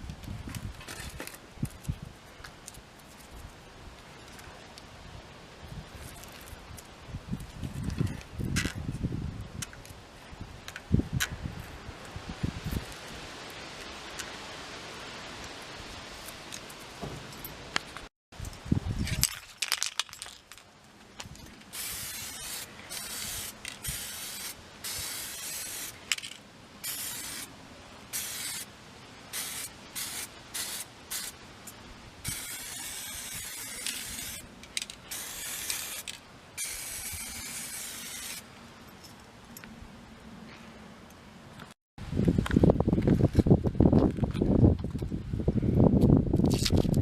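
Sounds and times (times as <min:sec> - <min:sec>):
spray paint can hissing: 0:21.6 - 0:27.5, 0:28.1 - 0:28.7, 0:29.3 - 0:38.4.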